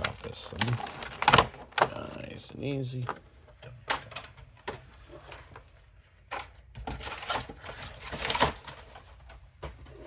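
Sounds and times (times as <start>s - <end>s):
packaging tearing and crinkling: 0.0s - 1.9s.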